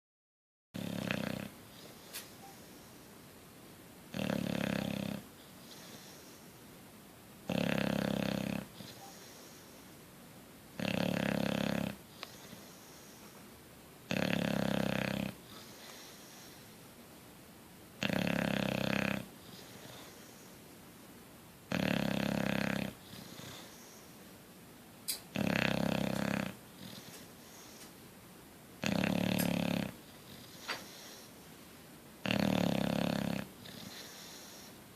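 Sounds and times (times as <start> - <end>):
dog snoring: 0.8 - 2.6, 4.1 - 6.4, 7.4 - 9.8, 10.8 - 13.3, 14.1 - 16.8, 18.0 - 20.6, 21.7 - 24.2, 25.3 - 27.9, 28.8 - 31.3, 32.2 - 34.8
dog breathing softly: 5.4 - 6.6, 8.6 - 10.0, 12.1 - 13.5, 15.3 - 16.8, 19.4 - 20.7, 22.9 - 24.3, 26.0 - 28.0, 29.2 - 31.5, 33.2 - 34.9.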